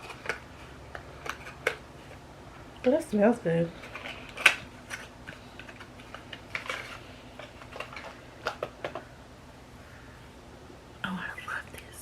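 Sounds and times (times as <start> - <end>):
plastic packaging clicks and taps: 7.4 - 9.1.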